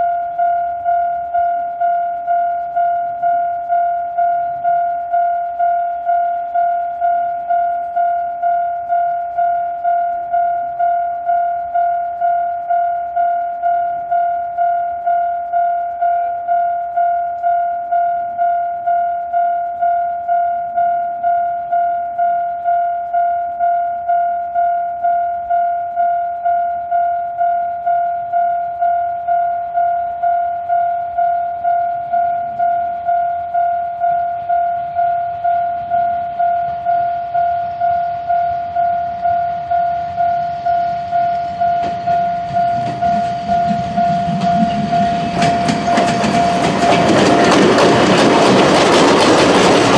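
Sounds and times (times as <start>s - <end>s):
level crossing electronic bell: 7.2s - 9.6s, 33.6s - 47.5s
train rumble: 37.5s - 49.9s.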